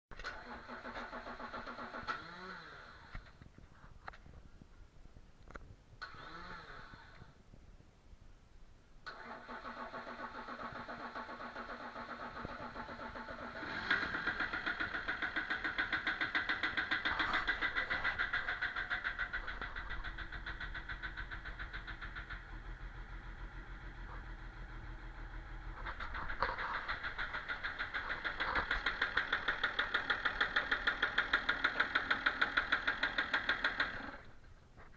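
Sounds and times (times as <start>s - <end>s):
diesel engine knocking: 10.0s - 34.4s.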